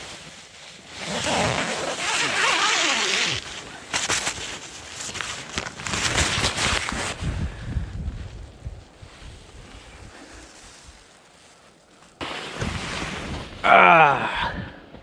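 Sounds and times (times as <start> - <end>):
rustling and shuffling: 0.0 - 13.6
tent zipper opening: 0.1 - 7.2.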